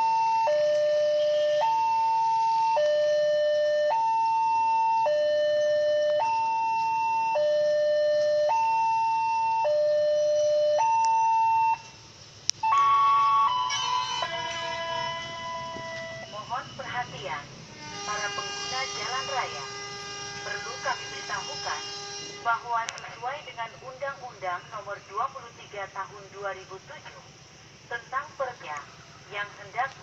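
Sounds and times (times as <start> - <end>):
two-tone crossing alarm: 0.0 - 26.1
recorded safety announcement: 12.6 - 30.0.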